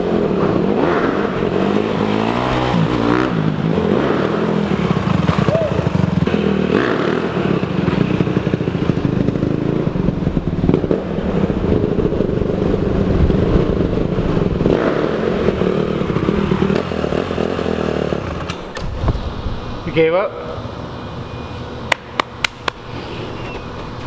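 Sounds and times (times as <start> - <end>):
dirt bike engine running: 0.0 - 18.8.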